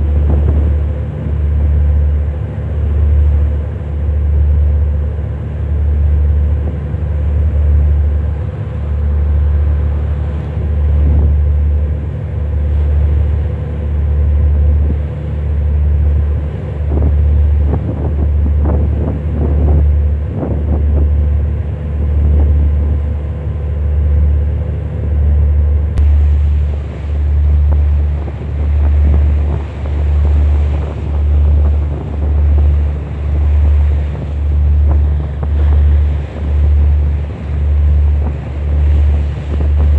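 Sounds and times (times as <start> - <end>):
loud low rumble: 0.0 - 39.9
wind buffeting microphone: 0.0 - 39.9.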